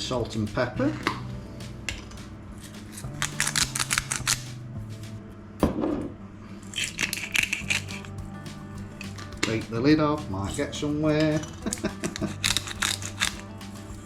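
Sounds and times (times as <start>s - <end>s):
grinder gritty clicks: 11.5s - 13.4s.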